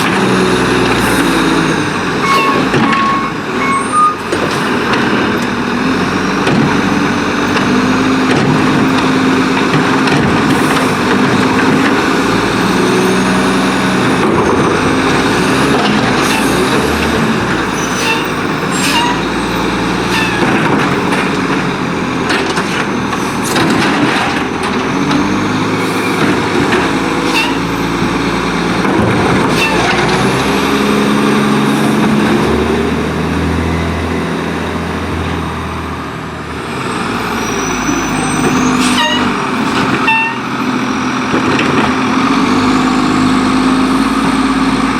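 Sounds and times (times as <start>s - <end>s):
diesel engine revving: 0.0s - 44.9s
sharp knocks and clanks: 2.3s - 3.4s, 6.4s - 12.6s, 20.0s - 25.3s, 26.0s - 30.8s.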